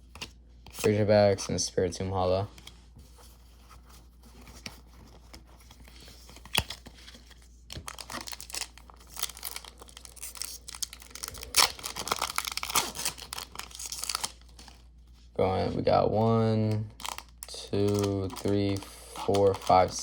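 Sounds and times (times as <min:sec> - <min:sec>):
foil pack tearing open: 0:07.8 - 0:14.4
foil wrapper crinkling: 0:07.8 - 0:14.8, 0:16.6 - 0:20.0.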